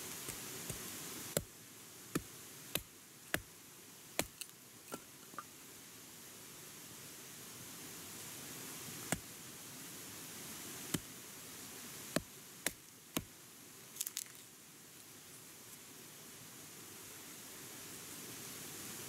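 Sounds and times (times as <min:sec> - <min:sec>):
steady hiss: 0:00.0 - 0:19.0.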